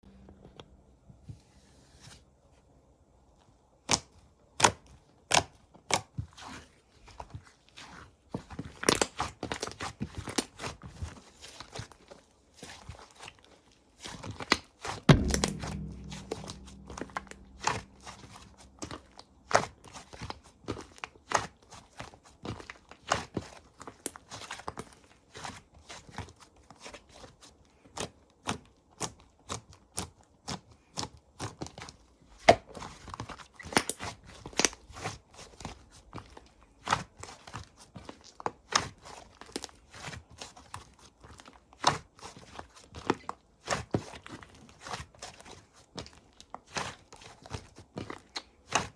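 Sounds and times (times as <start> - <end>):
heavy thump: 15.1 - 19.2.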